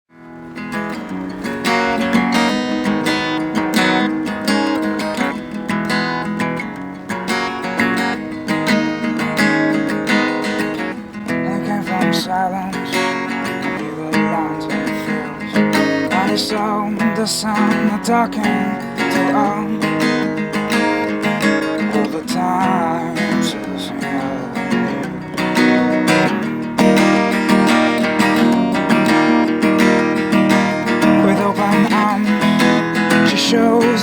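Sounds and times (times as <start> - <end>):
acoustic guitar strumming chords: 0.1 - 34.0.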